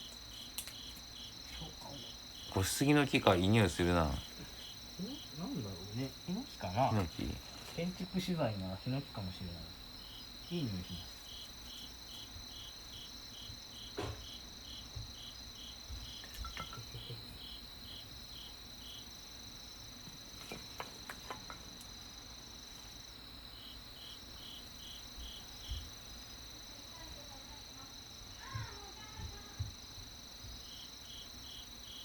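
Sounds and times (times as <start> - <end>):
campfire wood popping: 0.0 - 1.1
crickets trilling: 0.0 - 32.0
pulsed cricket chirp: 0.0 - 32.0.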